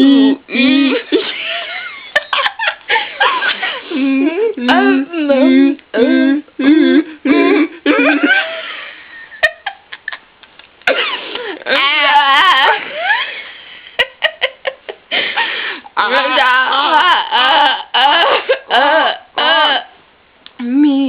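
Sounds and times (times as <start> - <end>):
young women making weird vocal noises: 0.0 - 1.1, 4.0 - 7.8, 11.6 - 12.9, 16.0 - 19.9.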